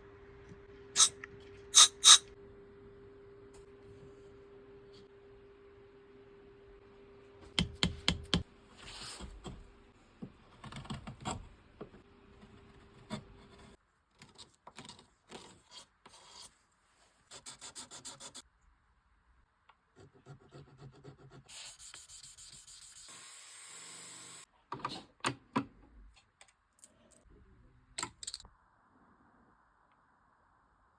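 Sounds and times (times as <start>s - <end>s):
hand tool rubbing and scraping: 1.8s - 2.3s.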